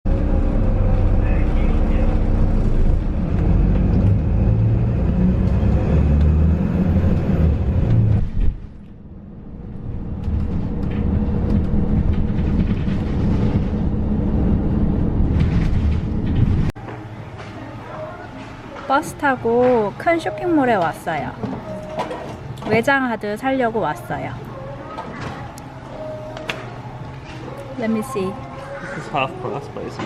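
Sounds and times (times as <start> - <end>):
bus engine and road rumble: 0.0 - 16.8.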